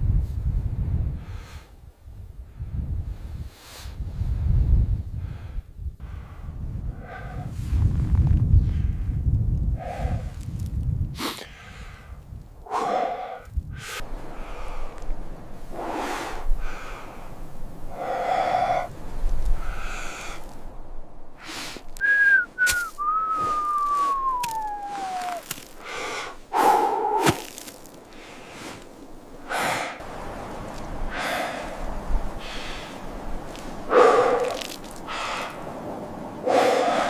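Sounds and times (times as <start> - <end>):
heavy breathing and snorts: 12.6 - 15.0, 25.0 - 28.8, 33.6 - 35.6, 36.4 - 37.0
whistle notes: 22.0 - 25.4.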